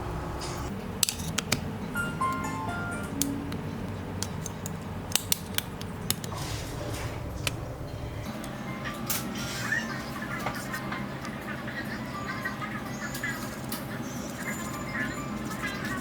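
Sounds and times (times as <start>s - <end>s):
steady low hum: 1.6s - 11.8s
hand tools clicking and tapping: 4.2s - 6.4s.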